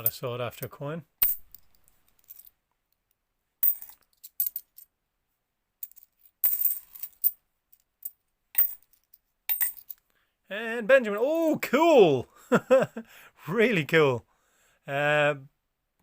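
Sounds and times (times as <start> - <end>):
coins clinking: 3.6 - 4.8, 5.8 - 7.4, 8.6 - 10.0.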